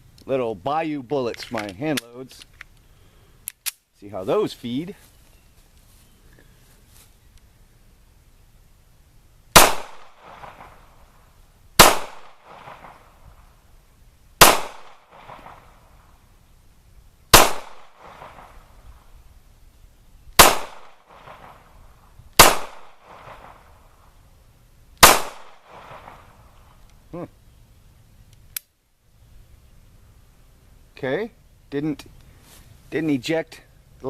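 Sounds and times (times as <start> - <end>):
pistol shots with echo: 9.6 - 10.8, 11.8 - 13.0, 14.4 - 15.6, 17.3 - 18.6, 20.4 - 21.6, 22.4 - 23.6, 25.0 - 26.2.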